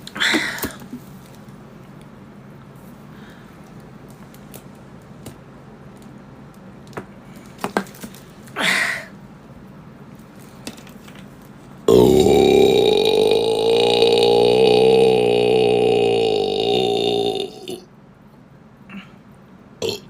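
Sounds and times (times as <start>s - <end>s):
woman belching: 11.9s - 17.8s.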